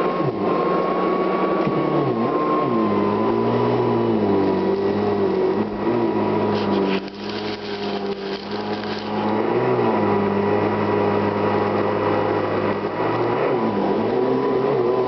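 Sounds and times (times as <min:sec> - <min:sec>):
upright vacuum cleaner running: 0:02.4 - 0:10.2.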